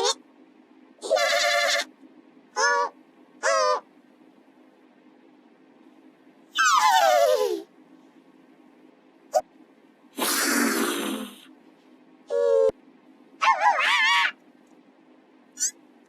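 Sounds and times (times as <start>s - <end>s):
wavering call: 2.6s - 3.9s, 6.5s - 7.7s, 12.3s - 12.8s
hissing sound: 10.2s - 11.5s.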